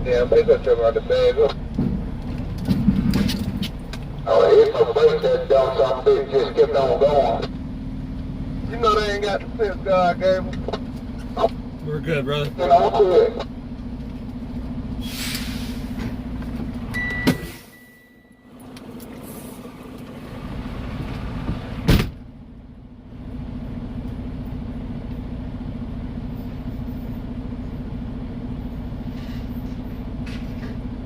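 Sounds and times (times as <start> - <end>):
diesel truck engine droning: 0.0 - 31.0.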